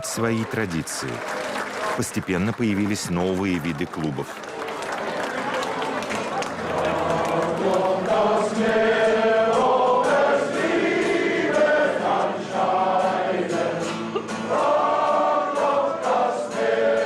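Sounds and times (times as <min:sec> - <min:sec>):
choir singing: 0:06.5 - 0:17.0.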